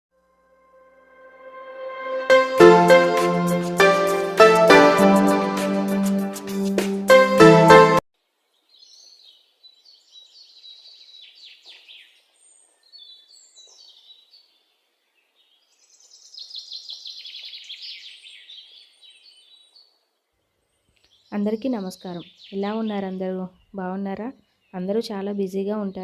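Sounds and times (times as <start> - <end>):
birds chirping: 20.7 - 26.0.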